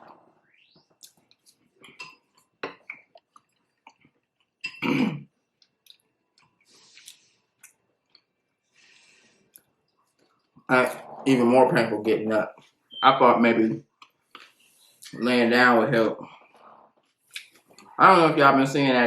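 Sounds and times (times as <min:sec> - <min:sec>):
throat clearing: 0:04.7 - 0:05.3.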